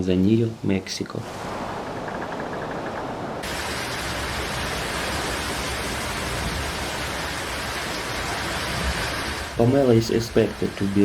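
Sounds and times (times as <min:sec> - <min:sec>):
wind: 0:00.0 - 0:11.0
heavy rain: 0:03.1 - 0:11.0.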